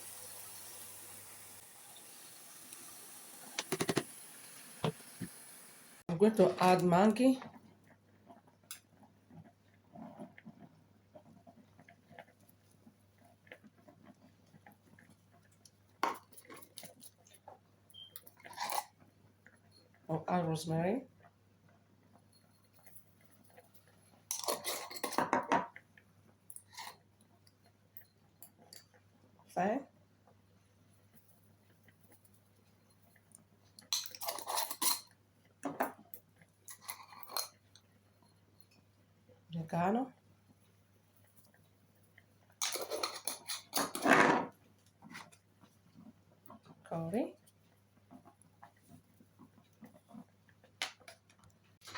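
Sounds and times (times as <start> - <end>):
rustling and clinking in kitchen: 22.2 - 25.8, 31.1 - 38.9, 42.5 - 51.9.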